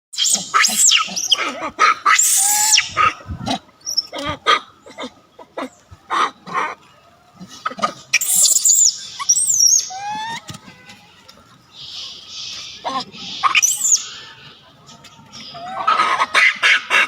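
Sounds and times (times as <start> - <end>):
monkeys screeching and squealing: 0.2 - 4.2, 7.6 - 10.6, 11.8 - 14.5, 15.4 - 17.0.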